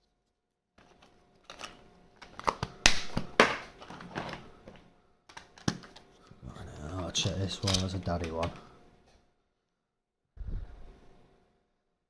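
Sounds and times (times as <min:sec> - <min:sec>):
plastic discs clicking and clattering: 0:00.8 - 0:06.1, 0:07.6 - 0:08.6.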